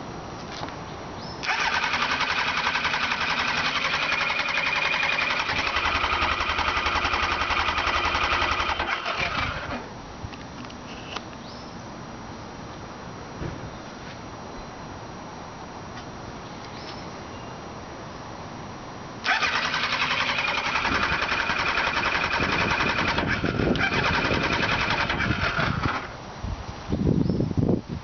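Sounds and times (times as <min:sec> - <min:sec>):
starter motor cranking engine: 0:01.4 - 0:09.9, 0:19.2 - 0:26.2.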